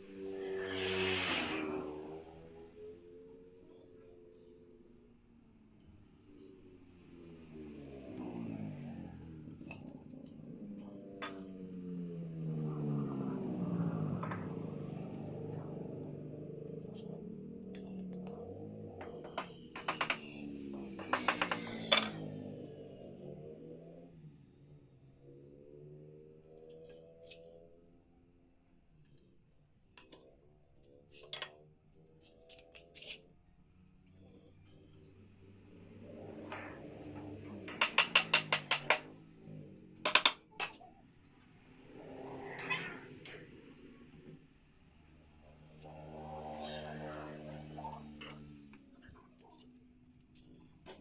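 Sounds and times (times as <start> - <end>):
low hum: 0.0 - 4.1
sharp taps and knocks: 19.0 - 22.2, 37.5 - 39.1, 40.1 - 40.8.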